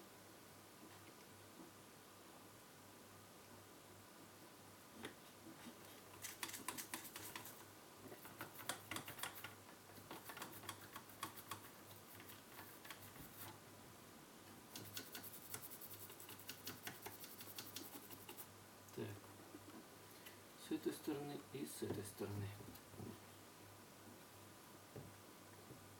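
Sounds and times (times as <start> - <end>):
faint steady hum: 0.0 - 25.9
light clicks and scratches: 5.0 - 13.6, 14.7 - 18.5.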